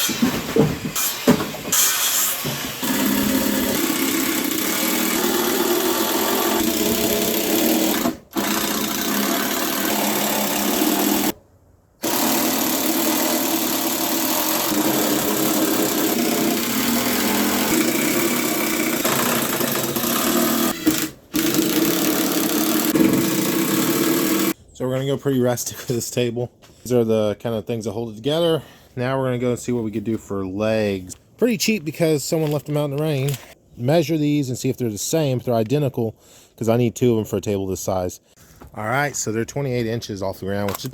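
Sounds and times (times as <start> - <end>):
power saw cutting wood: 1.0 - 11.4, 12.0 - 24.6.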